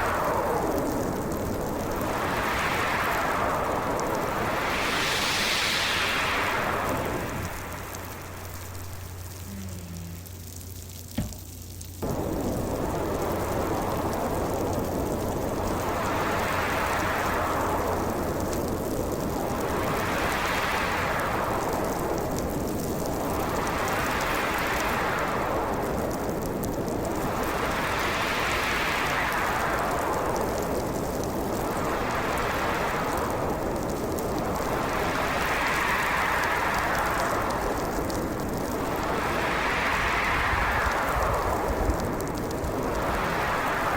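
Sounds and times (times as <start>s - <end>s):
rush of wind and snow: 0.0s - 10.4s, 11.8s - 43.9s
low hum: 3.8s - 19.1s.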